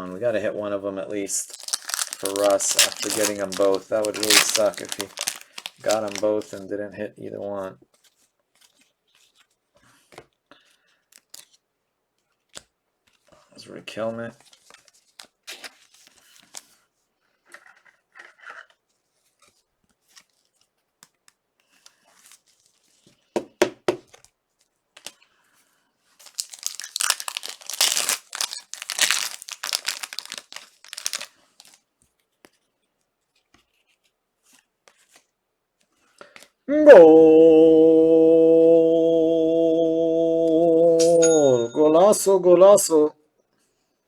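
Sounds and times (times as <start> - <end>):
wrapper tearing and crinkling: 1.4 - 6.6, 26.2 - 31.8.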